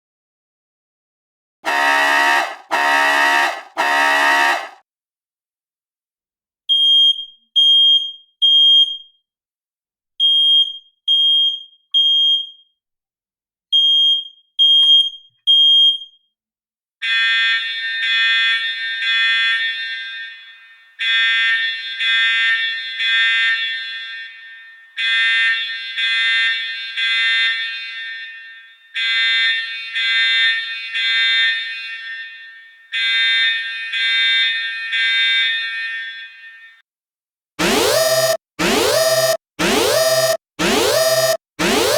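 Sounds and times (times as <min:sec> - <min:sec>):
harsh pulsed alarm tone: 0:01.7 - 0:04.8, 0:37.6 - 0:41.9
high-pitched alarm beeps: 0:37.6 - 0:41.9.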